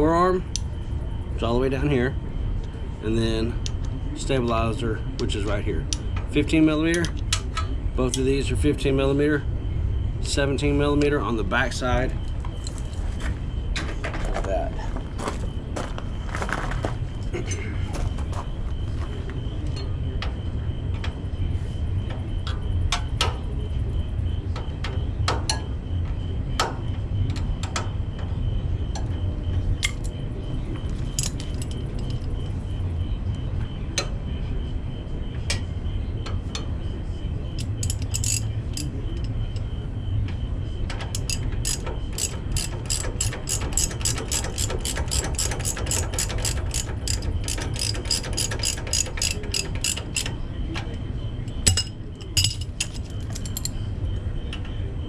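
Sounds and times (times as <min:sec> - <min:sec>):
socket ratchet clicking: 0:37.6 - 0:38.9, 0:41.2 - 0:50.3.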